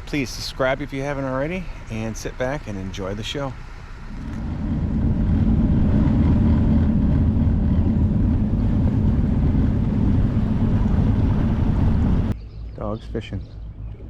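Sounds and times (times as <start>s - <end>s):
boat engine rumbling: 0.0s - 14.0s
wind buffeting microphone: 2.9s - 14.0s.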